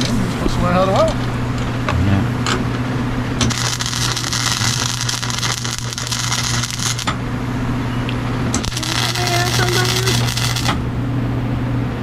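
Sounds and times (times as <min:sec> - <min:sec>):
steady low hum: 0:00.0 - 0:12.0
welding arc crackling and hissing: 0:03.4 - 0:07.2, 0:08.5 - 0:11.0.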